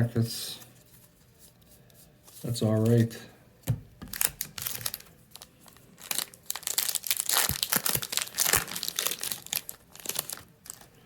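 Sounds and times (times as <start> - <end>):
foil wrapper crinkling and tearing: 4.1 - 11.0.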